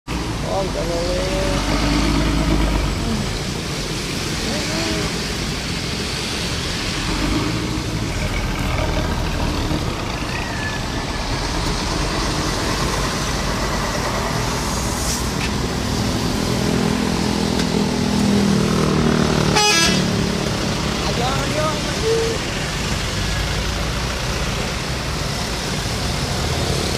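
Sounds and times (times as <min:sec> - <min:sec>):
traffic noise: 0:00.0 - 0:26.9
bus engine running: 0:00.1 - 0:26.9.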